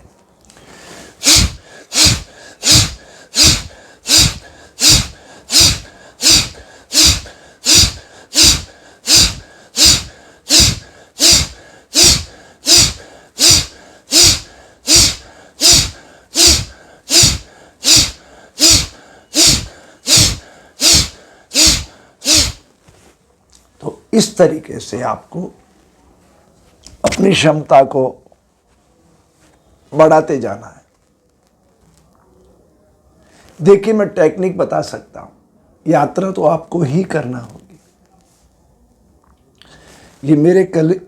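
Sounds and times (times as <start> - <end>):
forceful nasal exhalations: 0.6 - 23.1, 39.6 - 40.2.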